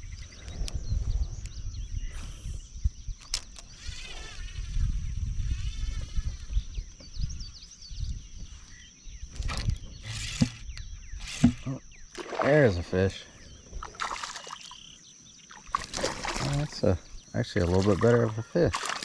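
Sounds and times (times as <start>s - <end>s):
high-pitched hum: 0.8s - 15.0s
wavering animal calls: 17.8s - 19.0s.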